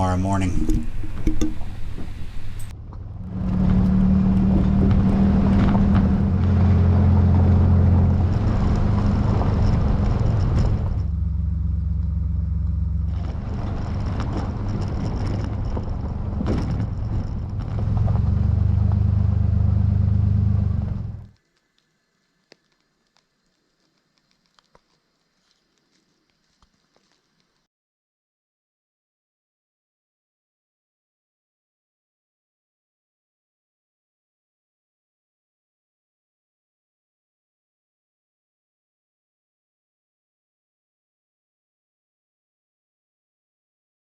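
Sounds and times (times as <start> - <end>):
vehicle engine and road noise: 0.0 - 21.4.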